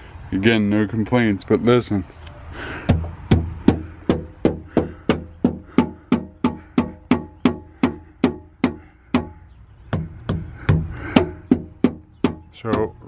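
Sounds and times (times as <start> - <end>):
hand knocking on tailgate: 2.9 - 13.0.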